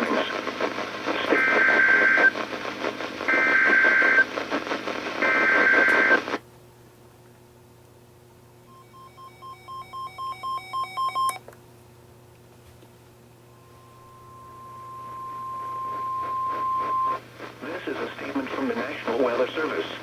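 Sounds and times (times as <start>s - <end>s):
alert receiver alarm beeps: 8.7s - 11.4s.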